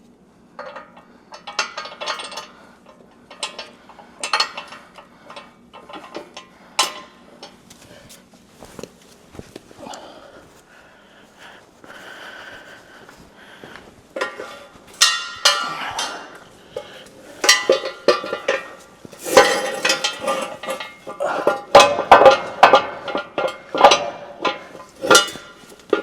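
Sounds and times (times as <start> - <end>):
metal objects clanking together: 0.6 - 7.6, 14.2 - 26.0.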